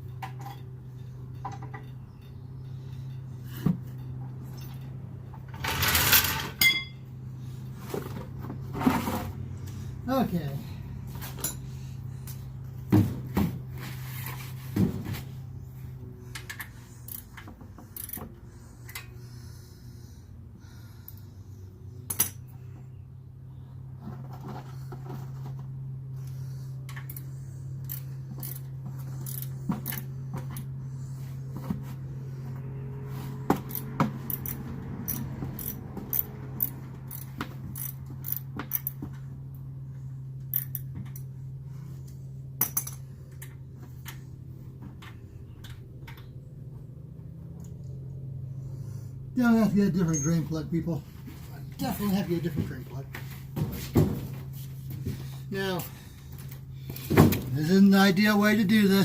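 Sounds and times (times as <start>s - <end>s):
steady low hum: 0.0s - 59.0s
hand tools clinking: 5.4s - 7.1s.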